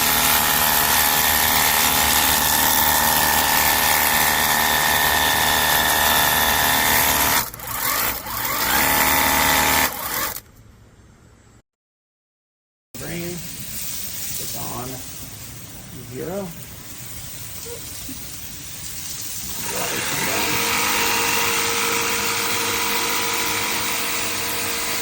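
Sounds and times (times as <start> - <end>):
pressure washer motor whining: 0.0 - 10.5, 18.1 - 25.0
water spray hissing: 13.0 - 25.0.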